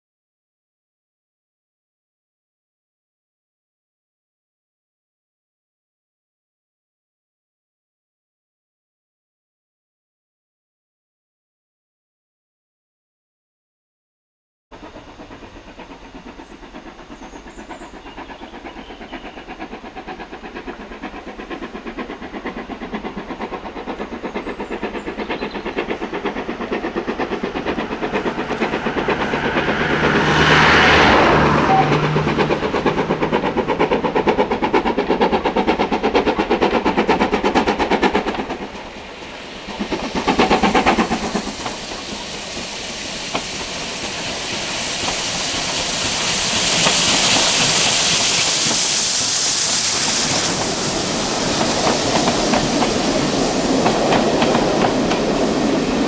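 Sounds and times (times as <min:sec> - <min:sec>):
steam train passing: 0:14.7 - 0:56.0
wheels on rails: 0:14.8 - 0:56.0.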